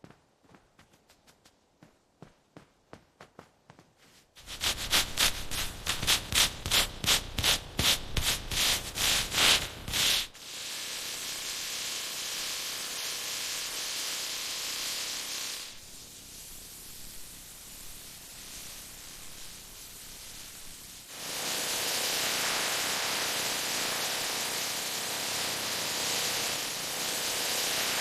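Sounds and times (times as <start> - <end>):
spraying hiss: 4.4 - 28.0.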